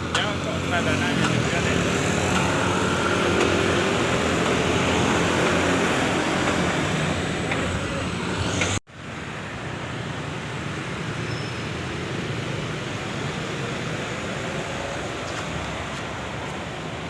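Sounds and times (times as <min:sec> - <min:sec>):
heavy vehicle engine running: 0:00.0 - 0:08.8
road traffic: 0:00.0 - 0:17.0.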